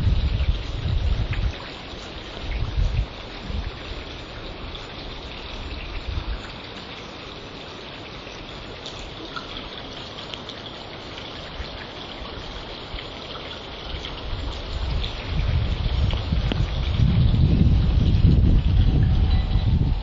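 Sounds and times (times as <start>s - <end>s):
wind buffeting microphone: 0.0s - 6.6s, 13.8s - 20.0s
faint rain pattering: 0.0s - 20.0s
gusty wind hiss: 0.0s - 20.0s.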